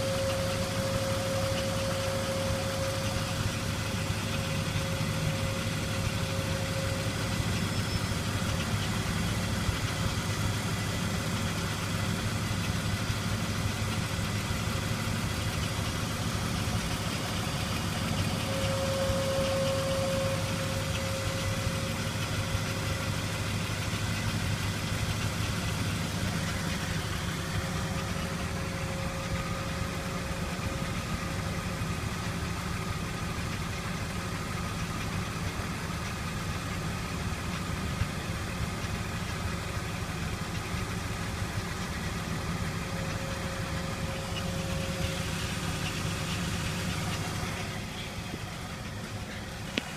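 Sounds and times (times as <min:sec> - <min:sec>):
high whine: 0:00.0 - 0:11.0, 0:15.1 - 0:24.8, 0:41.6 - 0:49.9
car engine idling: 0:00.0 - 0:49.9.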